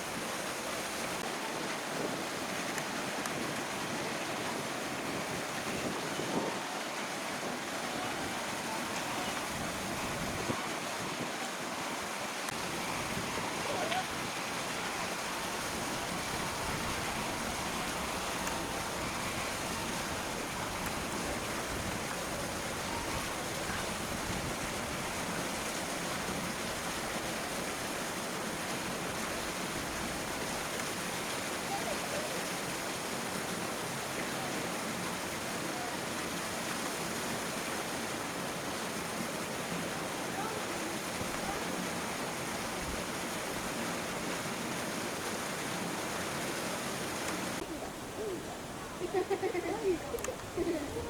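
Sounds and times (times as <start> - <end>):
faint distant voices: 3.8 - 37.4, 38.6 - 44.6.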